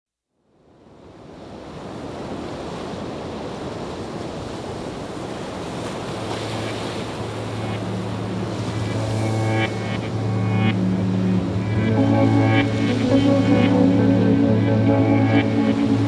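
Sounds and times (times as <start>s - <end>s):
ocean surf rushing: 1.2s - 16.0s
low background music drone: 6.2s - 16.0s.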